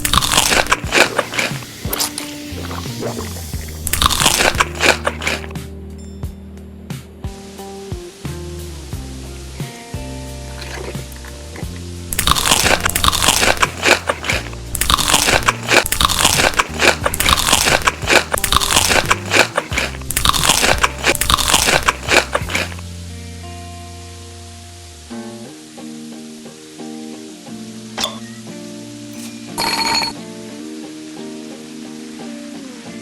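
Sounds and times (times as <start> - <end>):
crunching of crisp food: 0.0 - 5.6, 12.1 - 22.8
background music with steady bass: 0.0 - 26.1.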